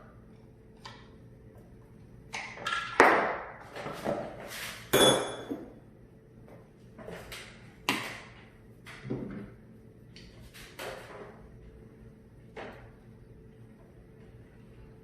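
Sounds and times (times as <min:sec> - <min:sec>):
sharp ringing metallic hits: 0:05.0 - 0:05.5.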